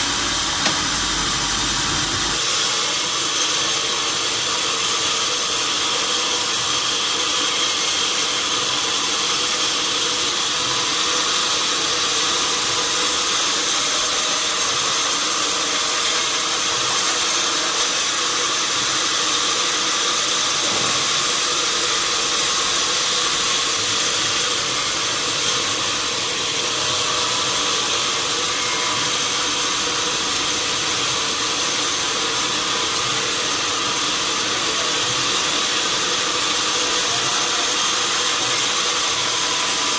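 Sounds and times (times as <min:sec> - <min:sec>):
machinery whining tones: 0:00.0 - 0:02.4
sawmill machinery hissing: 0:00.0 - 0:39.9.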